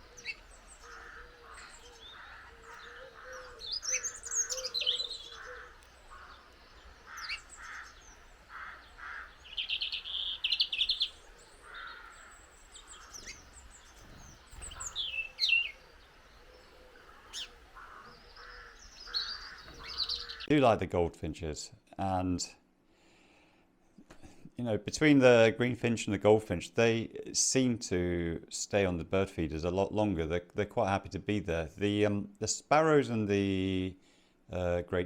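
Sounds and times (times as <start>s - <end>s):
small birds chirping: 0.0s - 20.5s
fast rattling bird trill: 7.1s - 15.8s, 17.2s - 20.5s.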